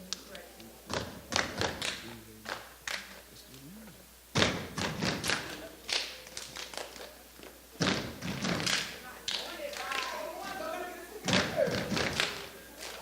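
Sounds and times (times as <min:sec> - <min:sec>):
stomps and body slaps: 0:07.8 - 0:08.9.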